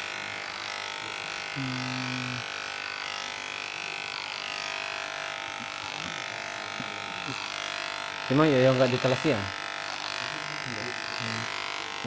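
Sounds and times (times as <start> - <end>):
electric hair clipper buzzing: 0.0 - 12.0.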